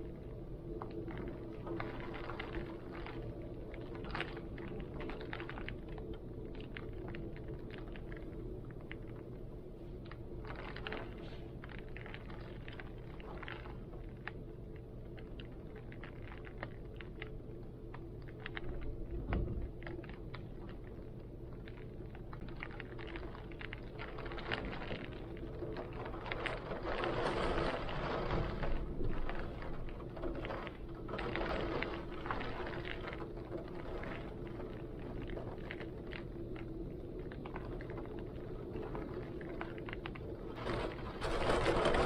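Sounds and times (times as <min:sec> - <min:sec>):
raindrops ticking on surfaces: 0:00.0 - 0:42.0
wind rumbling: 0:00.0 - 0:42.0.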